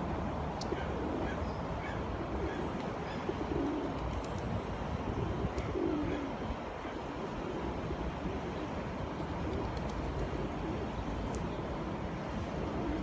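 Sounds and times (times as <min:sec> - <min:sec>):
pigeons cooing: 0:00.7 - 0:04.0, 0:05.6 - 0:06.3.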